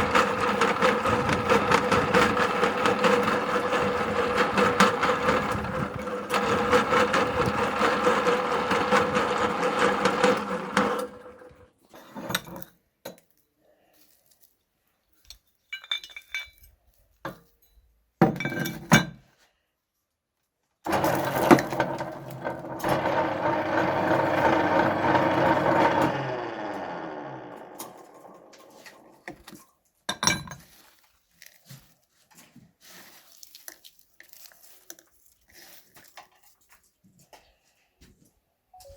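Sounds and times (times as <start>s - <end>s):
meat grinder humming: 0.0s - 11.7s, 20.9s - 29.4s
hard candy clinking and cracking: 33.1s - 36.7s.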